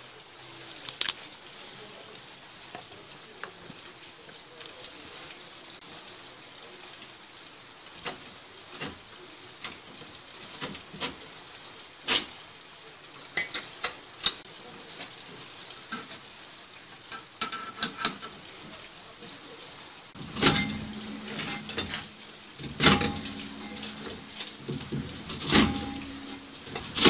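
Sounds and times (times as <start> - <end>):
hand tools clinking on metal: 13.3 - 14.4, 20.2 - 27.0
low hum: 20.2 - 27.0.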